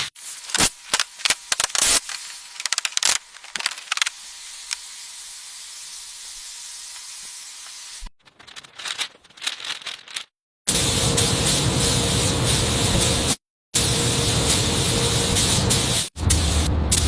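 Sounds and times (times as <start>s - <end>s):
spraying hiss: 4.1s - 8.1s, 10.7s - 17.0s.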